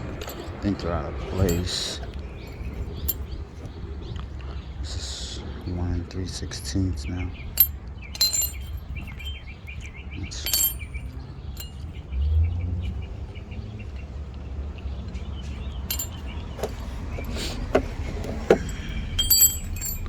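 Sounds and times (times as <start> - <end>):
metal adapters clinking: 0.0 - 0.7, 1.3 - 3.3, 7.6 - 12.0, 15.9 - 20.0.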